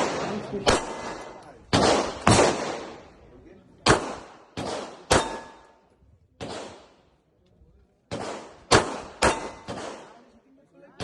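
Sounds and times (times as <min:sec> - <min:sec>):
echoing gunshots: 0:00.0 - 0:03.2, 0:03.8 - 0:05.7, 0:06.4 - 0:07.0, 0:08.1 - 0:10.3.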